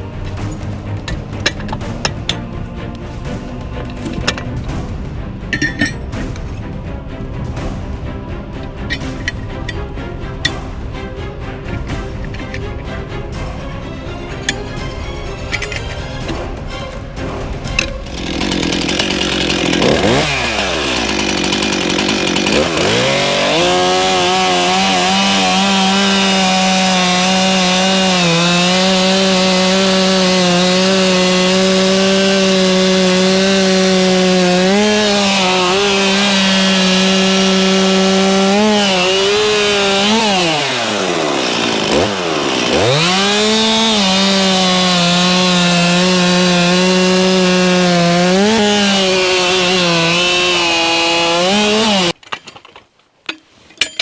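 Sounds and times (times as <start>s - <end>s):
chainsaw sawing through log: 17.6s - 52.2s.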